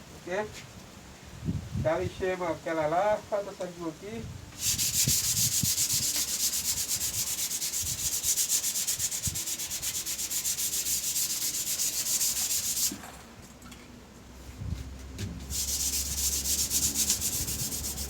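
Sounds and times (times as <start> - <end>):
sandpaper scraping on wood: 4.6 - 13.0, 15.5 - 18.0.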